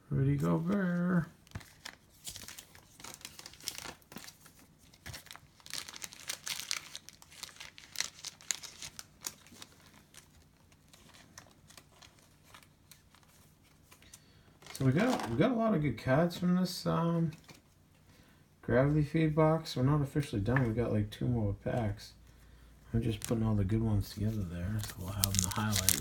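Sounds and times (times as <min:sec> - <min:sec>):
thin plastic crinkling: 0:00.4 - 0:15.4, 0:23.0 - 0:26.0.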